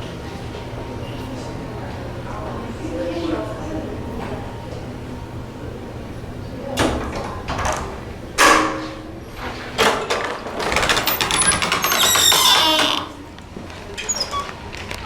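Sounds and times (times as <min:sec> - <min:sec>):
door knocks and clicks: 0:09.9 - 0:13.2
door creaking: 0:10.5 - 0:13.3, 0:13.9 - 0:15.0.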